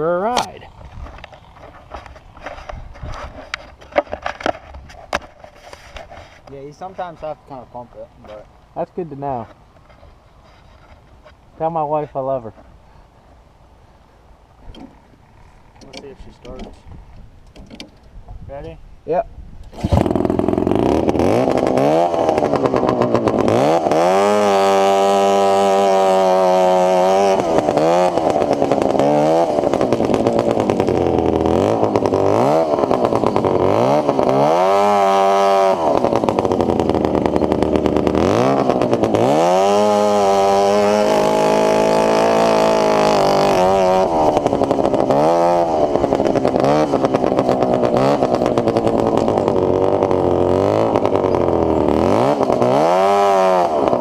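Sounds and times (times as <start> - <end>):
two-stroke engine revving: 19.7 - 54.0.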